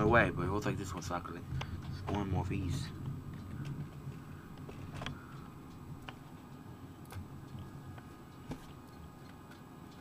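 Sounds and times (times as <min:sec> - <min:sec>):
faint low room hum: 0:00.0 - 0:10.0
computer mouse clicking: 0:03.3 - 0:10.0.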